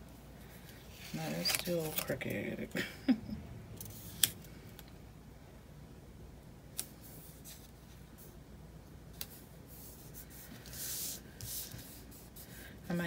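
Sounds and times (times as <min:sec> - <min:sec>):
paper rustling: 0:00.5 - 0:02.3.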